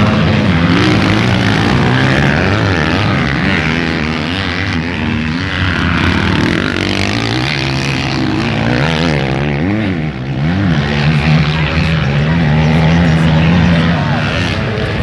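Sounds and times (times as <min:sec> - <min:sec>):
motocross bike engines revving: 0:00.0 - 0:15.0.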